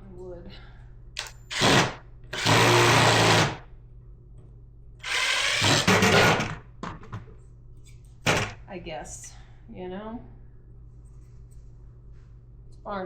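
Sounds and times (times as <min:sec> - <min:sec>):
power drill running: 0:01.5 - 0:03.6, 0:05.0 - 0:06.5.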